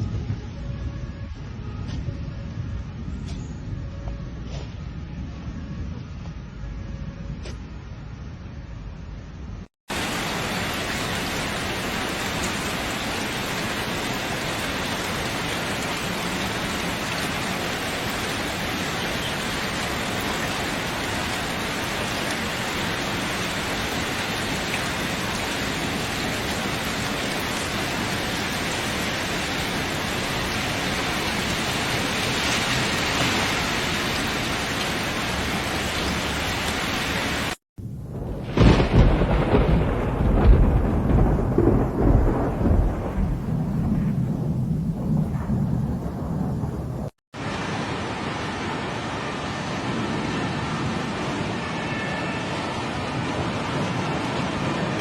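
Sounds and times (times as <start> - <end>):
heavy rain pouring: 9.9 - 55.0
deep uneven rumbling: 41.3 - 47.1.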